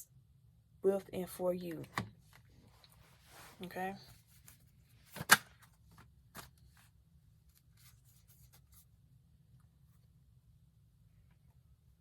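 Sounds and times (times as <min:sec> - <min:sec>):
cards snapping down: 0:05.1 - 0:05.7.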